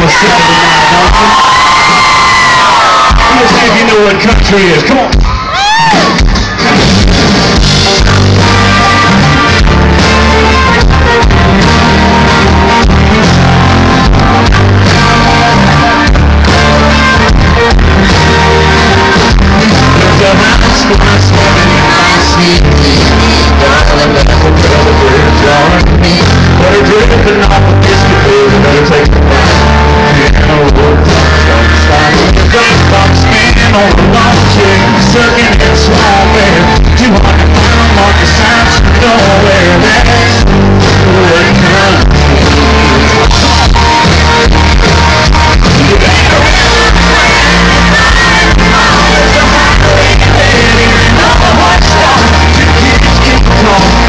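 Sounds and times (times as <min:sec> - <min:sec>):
male lead vocal: 0:00.0 - 0:05.1, 0:08.0 - 0:54.0
voices shouting and singing: 0:00.0 - 0:06.7, 0:07.8 - 0:54.0
bass line: 0:00.0 - 0:54.0
live country-rock band: 0:00.0 - 0:54.0
drum hits: 0:05.1 - 0:15.2.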